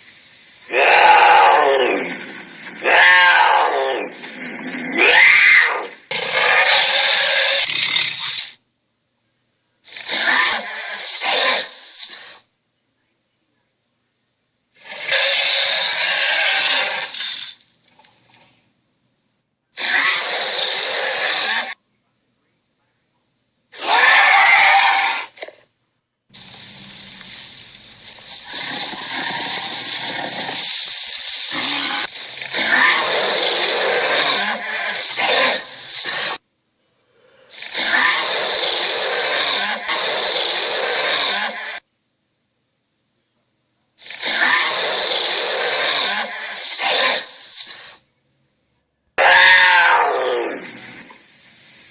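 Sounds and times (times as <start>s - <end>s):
tiger snarling: 0.7s - 8.4s, 23.8s - 25.6s, 28.4s - 36.4s, 37.5s - 41.8s, 44.1s - 47.4s, 49.2s - 51.2s.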